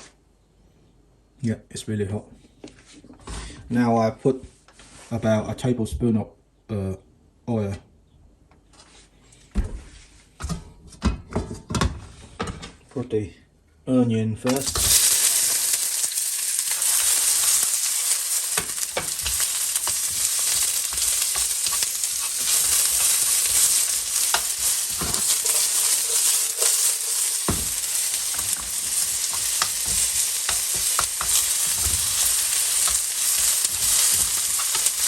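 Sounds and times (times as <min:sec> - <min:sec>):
onion sizzling in hot oil: 0:14.5 - 0:35.0.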